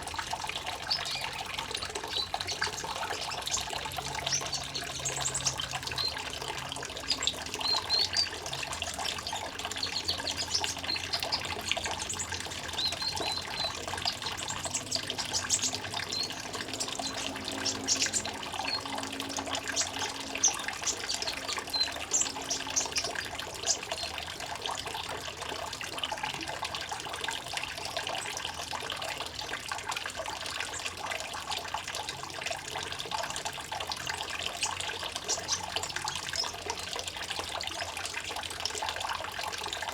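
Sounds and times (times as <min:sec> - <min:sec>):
small birds chirping: 0:00.0 - 0:24.5, 0:34.0 - 0:36.8
water trickling: 0:00.0 - 0:39.9.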